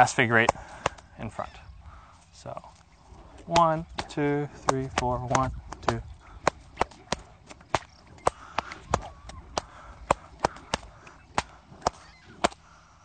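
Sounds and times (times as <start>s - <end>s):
whips cracking: 3.5s - 12.6s.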